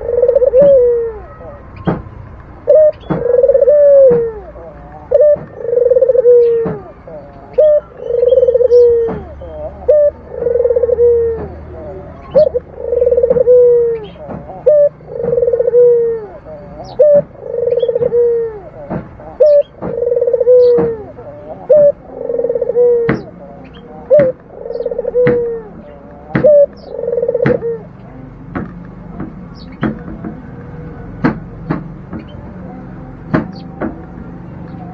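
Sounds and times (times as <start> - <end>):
dove cooing: 0.0 - 34.9.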